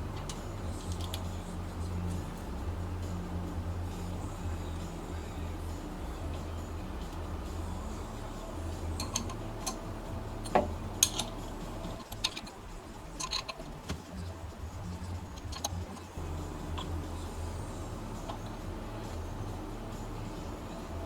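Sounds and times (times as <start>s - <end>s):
low steady hum: 0.0s - 21.0s
metallic clicks and clinks: 0.0s - 21.0s.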